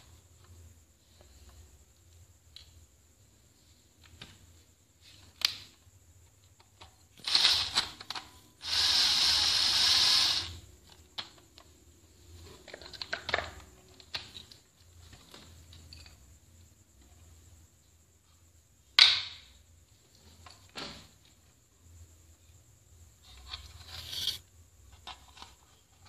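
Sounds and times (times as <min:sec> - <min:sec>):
harsh hissing or scraping: 0:23.2 - 0:24.5.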